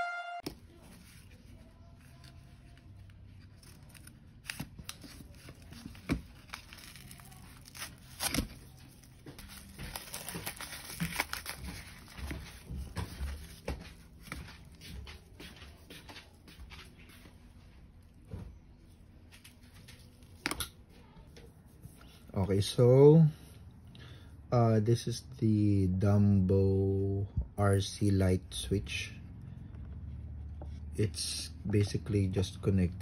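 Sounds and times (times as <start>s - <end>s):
packaging crinkling and tearing: 0.7s - 14.8s.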